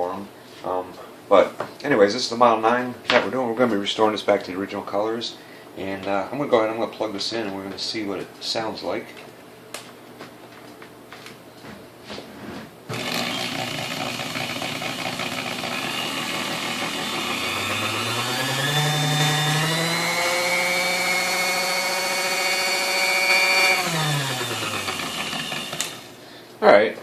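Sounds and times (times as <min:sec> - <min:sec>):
stand mixer motor whirring: 0:12.9 - 0:26.2.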